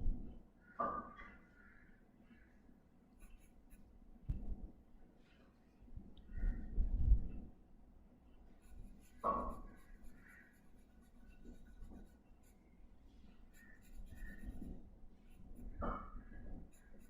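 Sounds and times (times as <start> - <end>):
pencil scratching on paper: 3.2 - 3.9, 8.5 - 17.0.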